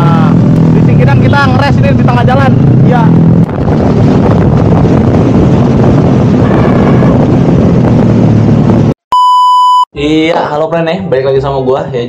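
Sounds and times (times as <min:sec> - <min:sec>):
motorcycle engine hum: 0:00.0 - 0:09.0
wind noise on microphone: 0:00.0 - 0:09.0.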